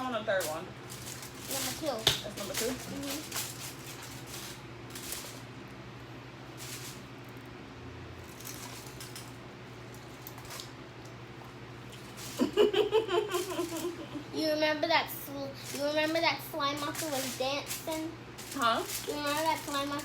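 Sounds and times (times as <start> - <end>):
steady low hum: 0.0 - 20.0
burst of laughter: 12.3 - 14.2.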